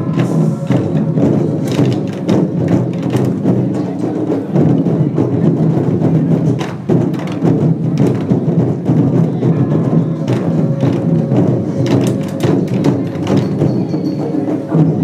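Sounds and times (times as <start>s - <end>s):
gongs and cymbals crashing: 0.0s - 4.7s, 8.6s - 15.0s
drum beating: 0.0s - 15.0s.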